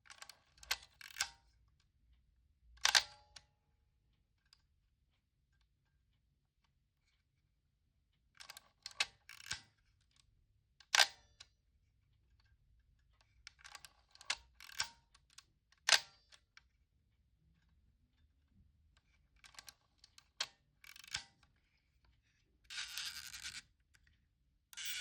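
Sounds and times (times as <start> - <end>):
camera mechanism clicks: 14.6 - 15.0.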